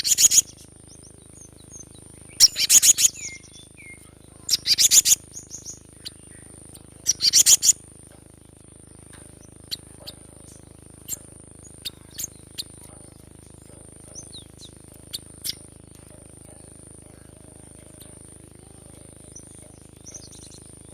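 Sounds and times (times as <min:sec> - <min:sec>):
steady high-pitched whine: 0:00.0 - 0:20.9
bird calling sharp notes: 0:02.3 - 0:06.4, 0:07.0 - 0:07.8.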